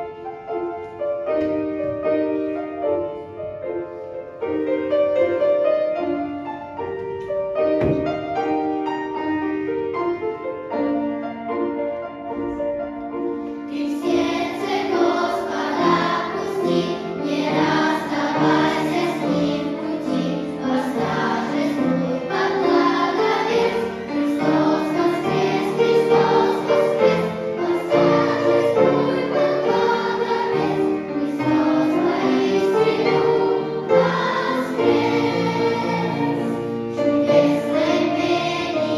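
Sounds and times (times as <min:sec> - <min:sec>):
slow piano playing: 0:00.0 - 0:38.9
choir singing: 0:13.7 - 0:38.9.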